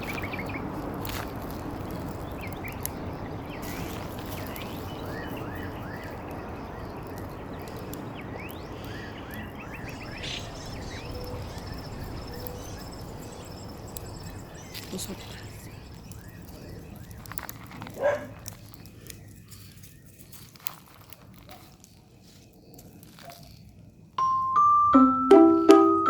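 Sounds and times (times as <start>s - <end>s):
steady rushing background: 1.7s - 16.4s
high insect trill: 1.8s - 16.9s
rising animal chirps: 8.4s - 16.5s.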